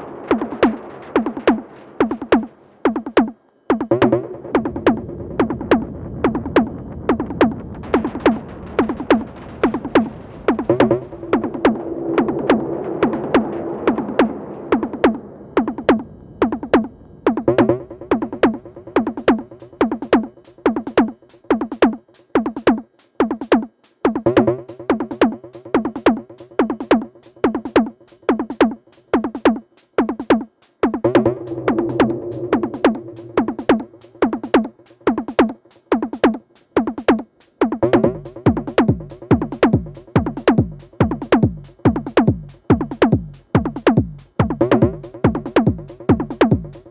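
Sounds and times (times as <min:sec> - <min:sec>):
droning electronic tone: 0:31.2 - 0:34.3.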